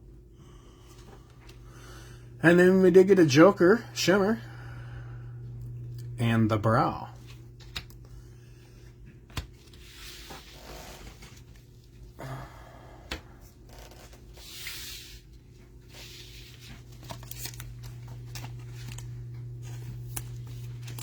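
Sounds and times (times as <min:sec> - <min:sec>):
low hum: 0:02.0 - 0:08.9
packaging tearing and rustling: 0:16.7 - 0:21.0.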